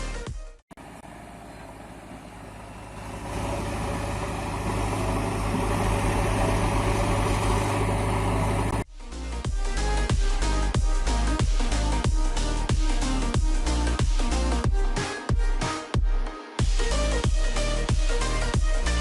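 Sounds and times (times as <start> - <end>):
vehicle engine idling: 0.7 - 15.0, 16.8 - 19.0
electronic music: 5.4 - 19.0.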